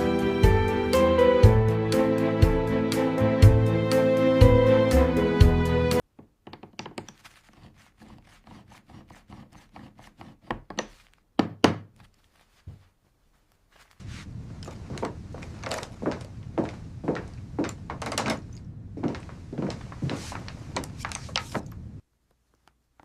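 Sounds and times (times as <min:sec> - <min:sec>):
background music: 0:00.0 - 0:06.0.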